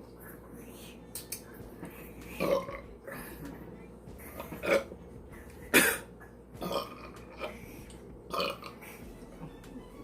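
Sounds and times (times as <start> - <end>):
woman burping: 2.4 - 2.8, 4.4 - 4.9, 5.7 - 7.5, 8.3 - 8.8.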